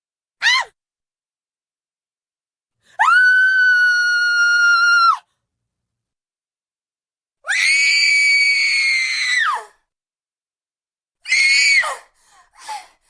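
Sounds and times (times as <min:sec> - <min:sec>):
woman screaming: 0:03.0 - 0:05.2.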